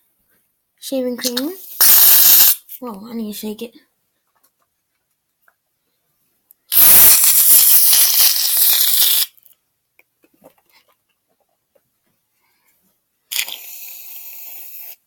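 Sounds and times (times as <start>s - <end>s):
aerosol can spraying foam: 1.6s - 2.6s, 6.7s - 9.3s.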